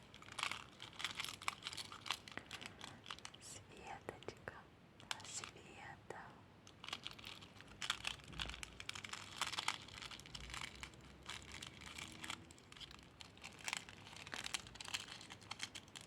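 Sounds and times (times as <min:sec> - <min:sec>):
jewellery clicking and rattling: 0:00.0 - 0:03.4, 0:06.7 - 0:16.0.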